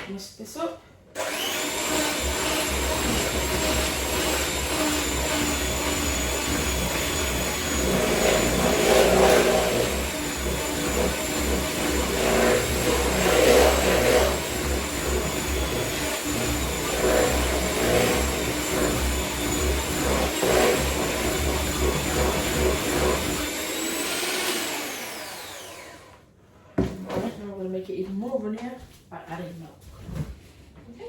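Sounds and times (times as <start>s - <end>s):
beaters churning batter: 1.2s - 25.6s
electric mixer motor whine: 1.2s - 26.2s.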